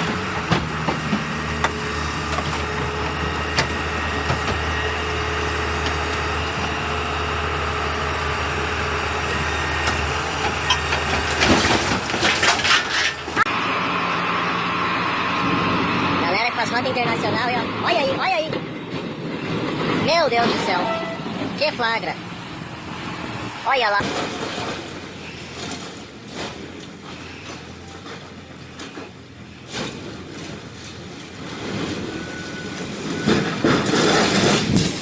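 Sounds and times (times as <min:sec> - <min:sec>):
heavy vehicle engine running: 0:00.0 - 0:35.0.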